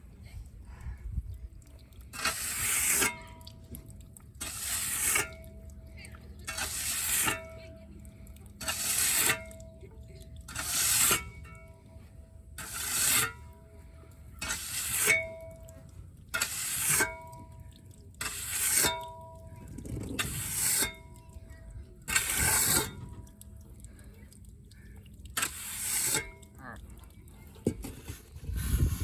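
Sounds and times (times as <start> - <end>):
hand tool scraping wet concrete: 2.1 - 5.6, 6.3 - 8.0, 8.6 - 9.8, 10.4 - 11.7, 12.6 - 13.6, 14.3 - 15.6, 16.3 - 17.4, 18.2 - 19.2, 19.8 - 21.2, 22.0 - 23.2, 25.3 - 26.6, 27.6 - 29.0.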